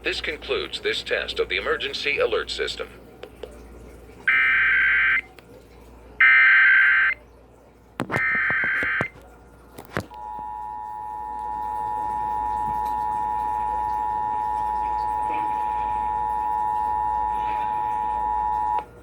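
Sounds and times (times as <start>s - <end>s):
two-tone attention signal: 4.3s - 5.3s, 10.2s - 18.9s.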